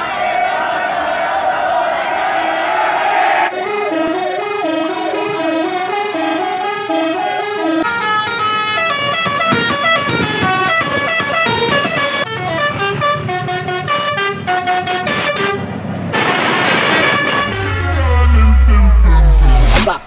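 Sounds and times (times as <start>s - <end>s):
bus air horns playing melodic tunes: 3.4s - 19.7s
rush of noise: 16.1s - 20.0s.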